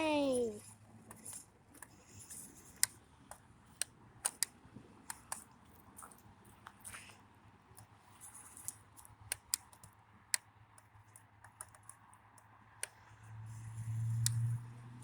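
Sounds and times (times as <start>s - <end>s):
sharp clicks and taps: 2.7s - 4.5s, 8.6s - 13.0s.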